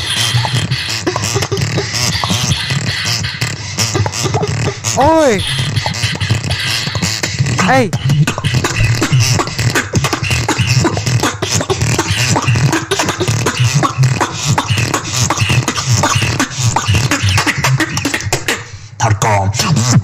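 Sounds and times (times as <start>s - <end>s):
person beatboxing: 0.0s - 20.0s.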